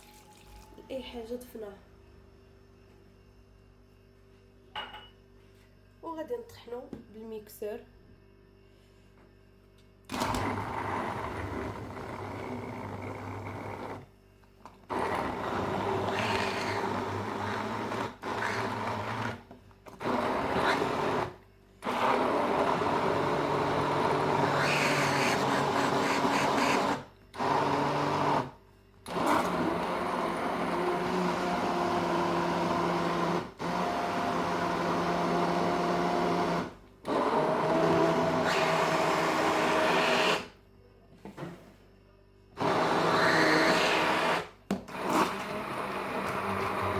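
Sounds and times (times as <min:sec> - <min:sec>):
electric blender running: 0:10.1 - 0:14.1, 0:14.9 - 0:40.6, 0:42.6 - 0:46.9.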